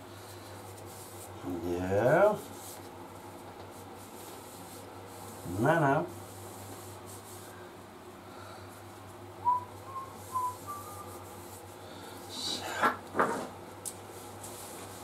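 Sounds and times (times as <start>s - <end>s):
steady low hum: 0.0s - 15.0s
faint whistled notes: 9.4s - 11.2s.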